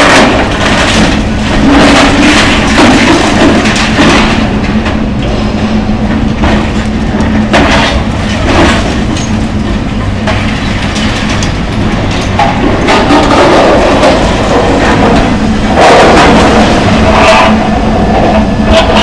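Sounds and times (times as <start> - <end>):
material crashing: 0.0 - 4.7, 12.6 - 17.6
debris clattering: 0.0 - 4.8, 12.1 - 17.4
excavator diesel engine running: 0.0 - 19.0.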